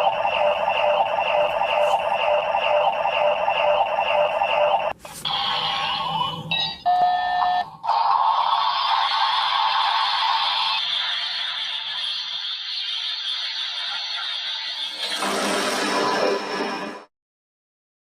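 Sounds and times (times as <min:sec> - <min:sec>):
ringing looping electronic tone: 0:00.0 - 0:07.8.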